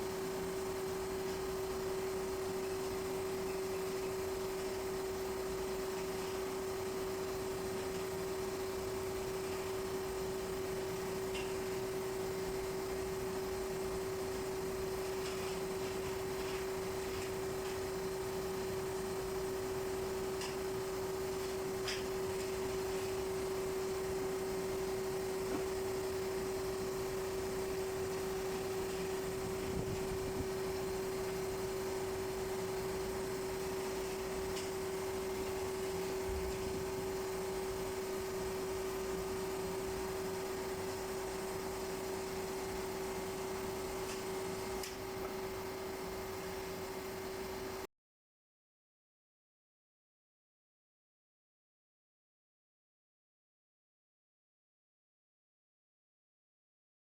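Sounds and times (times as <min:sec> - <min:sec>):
steady single-pitch hum: 0:00.0 - 0:47.9.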